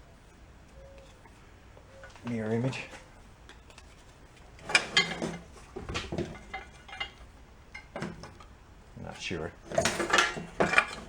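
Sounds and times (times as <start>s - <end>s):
metal parts clinking: 4.6s - 8.5s, 9.7s - 11.0s.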